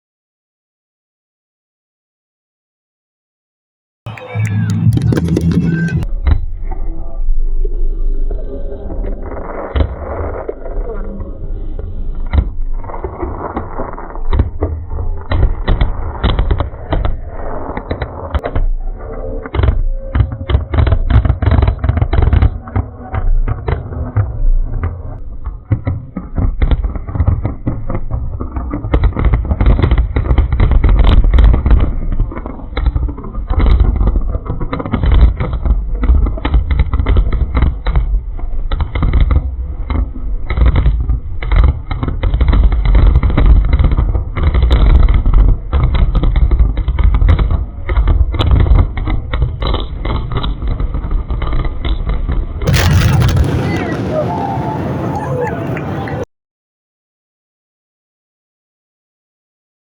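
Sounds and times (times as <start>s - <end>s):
fireworks bangs and crackling: 4.1s - 6.0s, 12.4s - 18.5s, 19.6s - 24.4s, 25.2s - 56.2s
low rumble: 4.1s - 14.0s, 52.7s - 55.6s.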